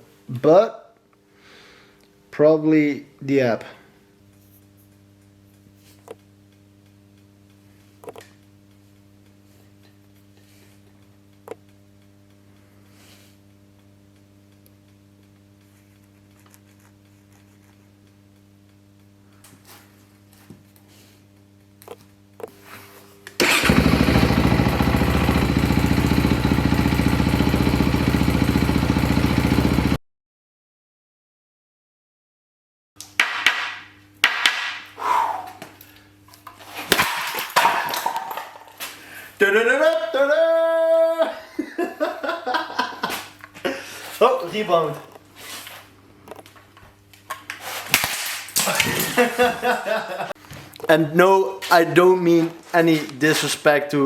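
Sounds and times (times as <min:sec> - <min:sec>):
faint mains hum: 0:00.0 - 0:23.7, 0:33.0 - 0:54.0
sharp knocks and clatters: 0:33.2 - 0:34.8.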